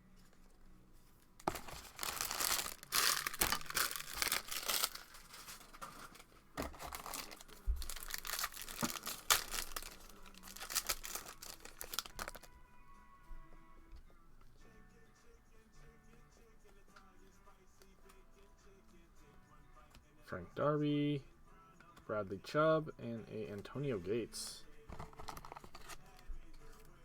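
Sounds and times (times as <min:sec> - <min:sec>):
plastic wrapper tearing and crinkling: 0:01.4 - 0:12.5, 0:25.0 - 0:26.0.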